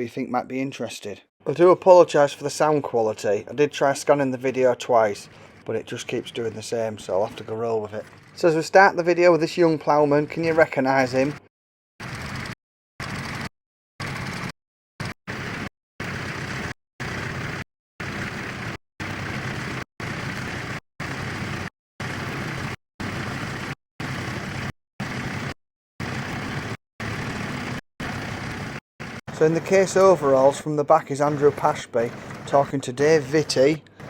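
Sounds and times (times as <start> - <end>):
tractor engine running: 3.8 - 11.4, 12.0 - 34.0.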